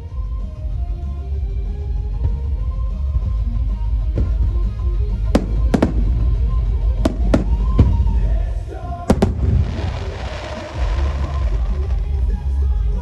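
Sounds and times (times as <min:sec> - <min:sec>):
firework shells bursting: 0:05.4 - 0:08.5, 0:09.1 - 0:10.6.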